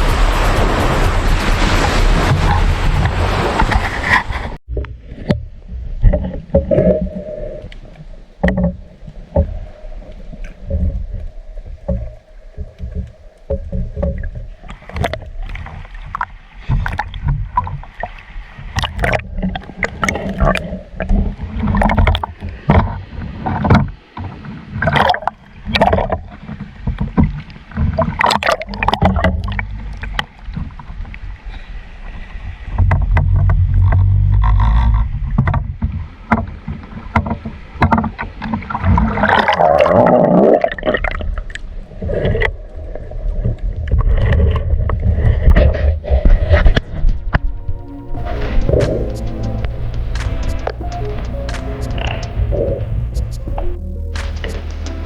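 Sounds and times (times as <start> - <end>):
low rumble: 0.0 - 14.6, 32.5 - 36.2, 41.1 - 55.0
sea water splashing: 0.0 - 55.0.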